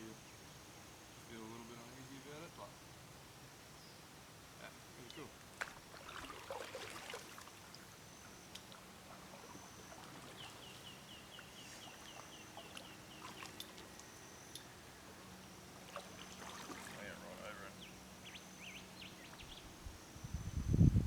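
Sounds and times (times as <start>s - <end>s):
water trickling and dripping: 5.0s - 14.7s, 15.7s - 17.2s
bird chirping: 9.3s - 14.7s, 17.6s - 20.7s.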